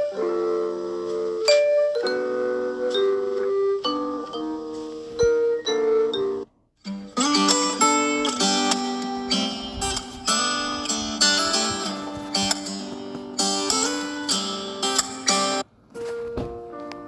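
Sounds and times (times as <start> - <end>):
plucked guitar ringtone: 3.9 - 15.6.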